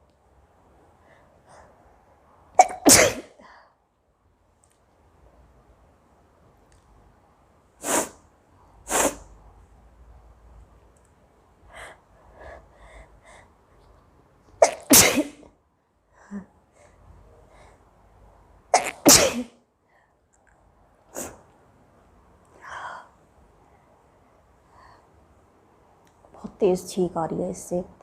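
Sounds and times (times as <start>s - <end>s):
woman sneezing: 2.6s - 3.4s, 14.6s - 15.4s, 18.8s - 19.5s.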